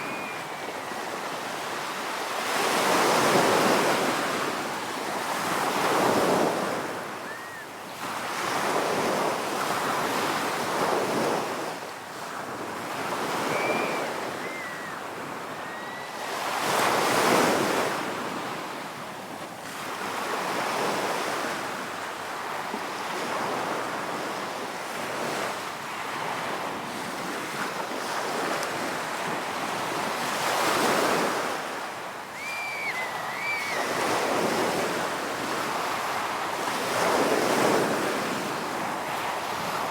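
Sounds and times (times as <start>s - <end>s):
ocean waves breaking on shore: 0.0s - 39.9s.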